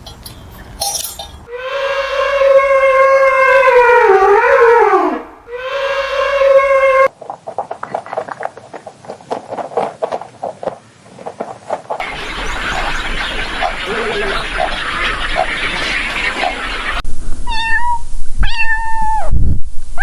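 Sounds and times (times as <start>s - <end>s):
horn-like animal call: 1.5s - 7.1s.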